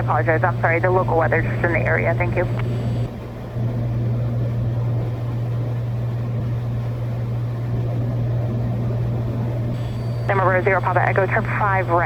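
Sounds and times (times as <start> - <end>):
propeller plane engine droning: 0.0 - 12.0.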